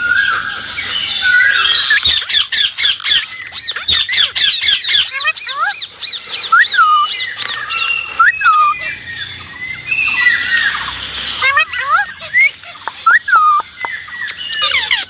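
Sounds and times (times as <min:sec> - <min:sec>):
parrot squawking: 0:00.0 - 0:15.0
parrot whistle-like notes: 0:11.4 - 0:15.0.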